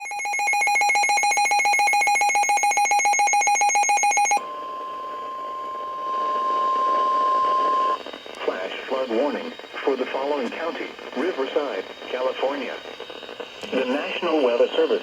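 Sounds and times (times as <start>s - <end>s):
electronic alarm pulsing rapidly: 0.0s - 4.4s
steady high warning tone: 0.0s - 15.0s.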